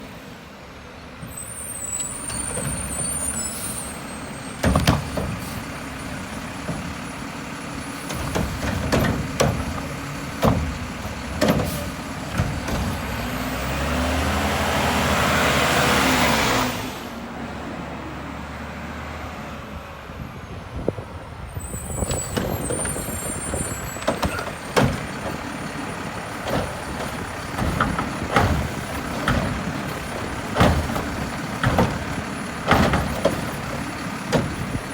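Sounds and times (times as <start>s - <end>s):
garbage truck engine running: 0.4s - 17.3s, 20.8s - 34.9s
thumps and clatter of trash: 2.2s - 3.4s, 4.6s - 7.1s, 8.0s - 13.7s, 22.0s - 34.9s.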